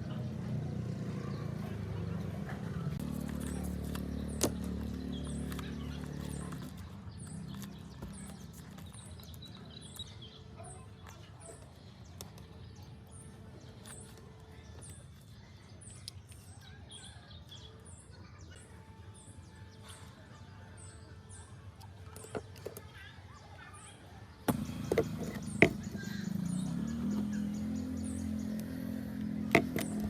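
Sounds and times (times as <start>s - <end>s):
low engine rumble: 0.0s - 10.0s, 24.4s - 30.0s
small bird chirping: 2.9s - 20.1s, 23.9s - 30.0s.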